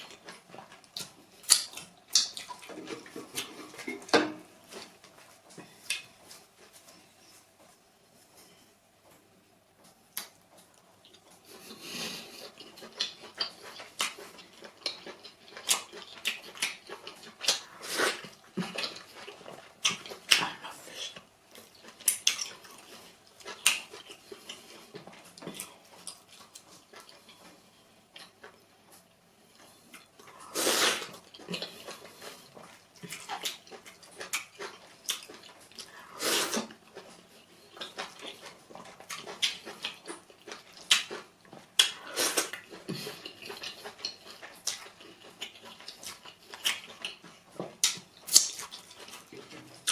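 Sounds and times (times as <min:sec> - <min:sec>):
wet eating smacks: 0:00.0 - 0:04.1, 0:37.8 - 0:49.9.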